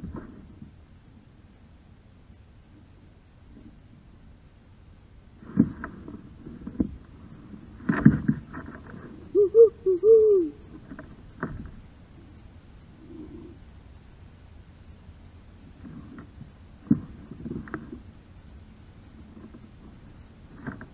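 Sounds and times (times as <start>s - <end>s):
low hooting calls: 9.3s - 10.7s.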